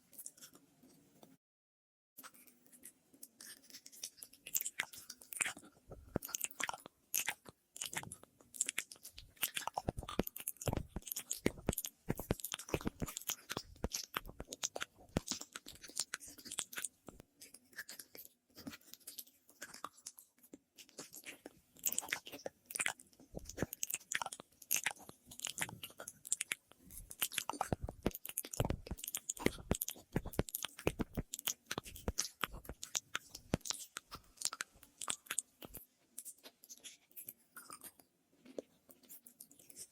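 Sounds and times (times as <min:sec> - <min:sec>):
wet mouth clicks and lip smacks: 0:03.3 - 0:20.2, 0:20.8 - 0:39.9.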